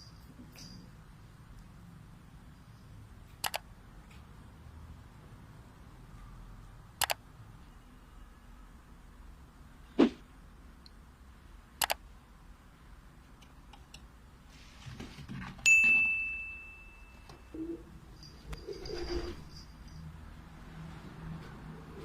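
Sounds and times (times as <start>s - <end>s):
sharp clicks: 3.4s - 3.7s, 7.0s - 7.2s, 11.8s - 12.0s
ringing metallic clang: 15.7s - 20.1s.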